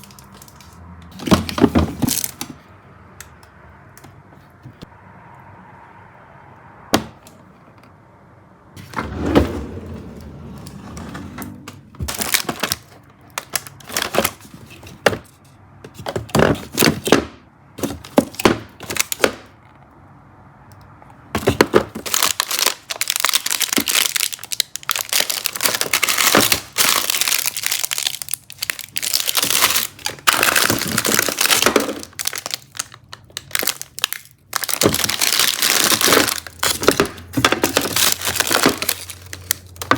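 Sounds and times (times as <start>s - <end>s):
plastic packaging crinkling: 0.0s - 2.6s, 12.0s - 14.9s, 21.4s - 39.9s.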